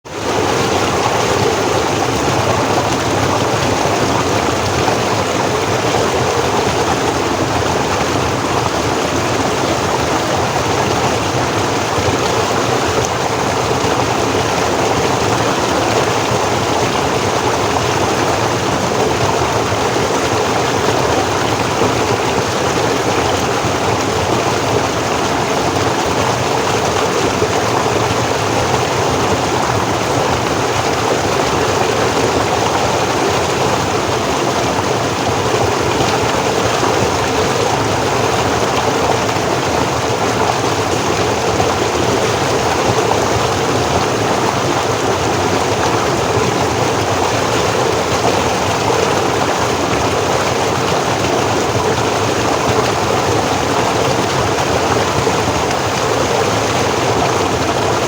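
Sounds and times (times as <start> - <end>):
stream flowing over rocks: 0.1 - 58.0.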